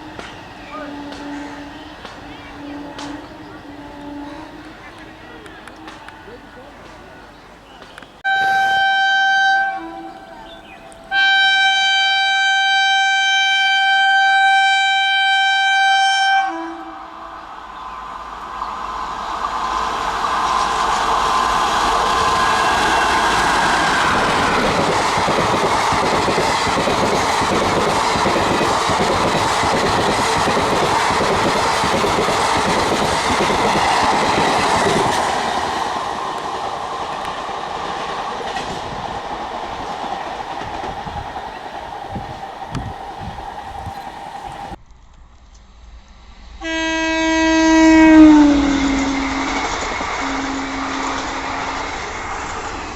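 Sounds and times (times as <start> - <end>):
train horn: 0.0 - 6.4, 8.2 - 17.4, 46.6 - 52.0
train wheels clicking over rails: 0.0 - 8.2, 18.0 - 46.6.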